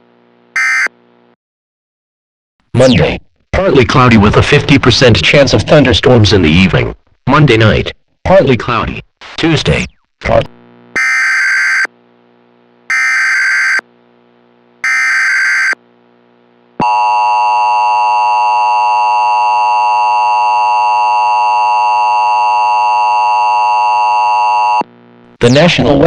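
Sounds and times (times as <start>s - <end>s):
harsh two-tone attention signal: 0.6s - 0.9s.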